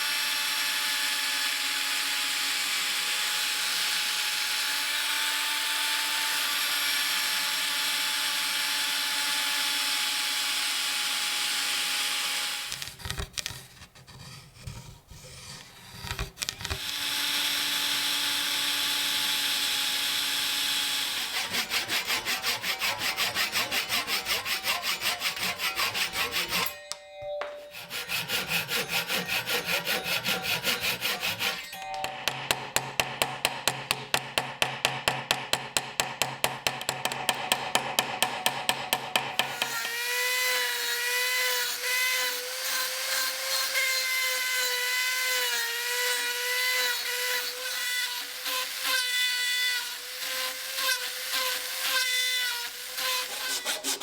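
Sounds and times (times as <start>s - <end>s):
hand tool back-and-forth strokes: 5.2s - 54.0s
small power tool running: 16.7s - 24.2s.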